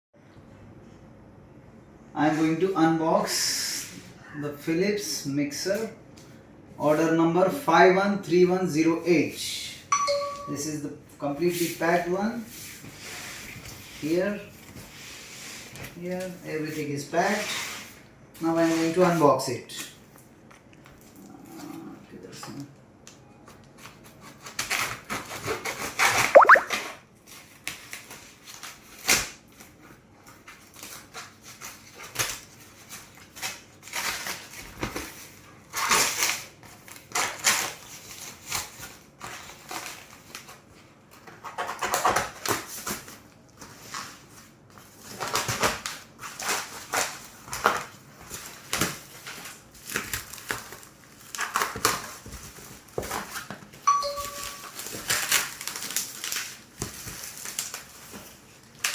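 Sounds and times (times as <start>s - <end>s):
packaging rustling: 44.8s - 53.8s, 54.6s - 58.9s.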